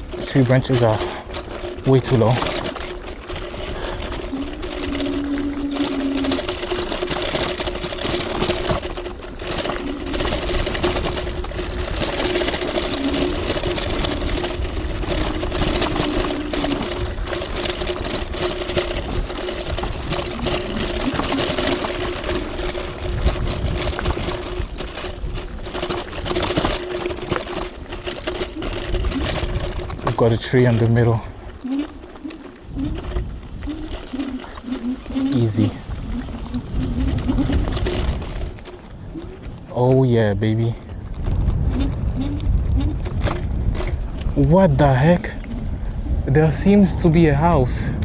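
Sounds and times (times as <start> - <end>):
electric scooter motor whine: 0.0 - 48.0
scooter rattling and knocking: 0.0 - 48.0.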